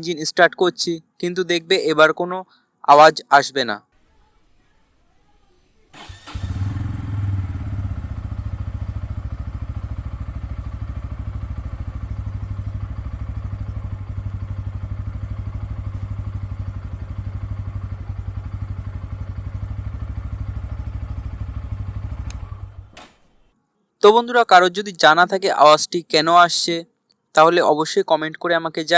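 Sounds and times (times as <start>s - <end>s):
motorcycle engine idling: 4.0s - 23.5s.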